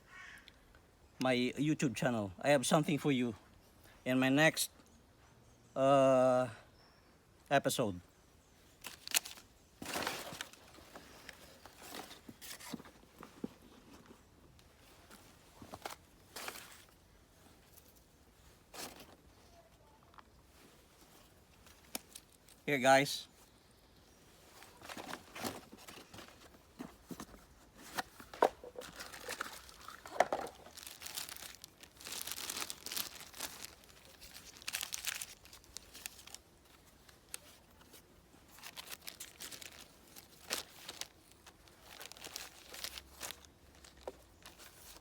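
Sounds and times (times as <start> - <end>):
packaging crinkling: 8.8 - 10.8, 28.0 - 37.6, 38.5 - 45.0.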